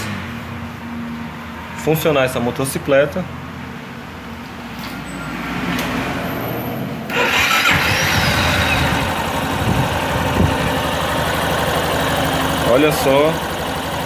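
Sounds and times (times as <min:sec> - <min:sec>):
electric starter cranking: 0:07.1 - 0:10.7
motorcycle engine running: 0:07.1 - 0:14.0.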